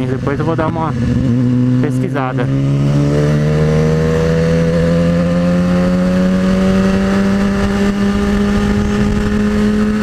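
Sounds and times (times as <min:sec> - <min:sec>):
motorcycle engine cruising: 0:00.0 - 0:10.0
wind rumbling on microphone: 0:02.4 - 0:10.0.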